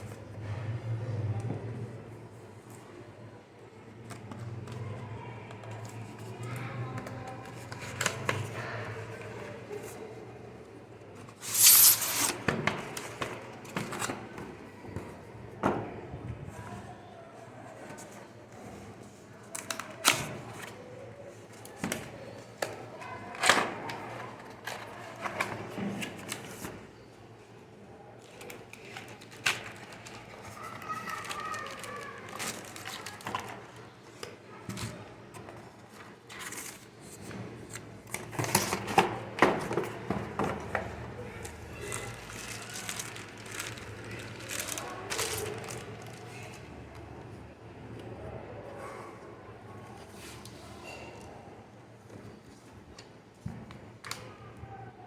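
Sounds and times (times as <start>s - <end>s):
handling noise rustling: 11.4s - 12.4s.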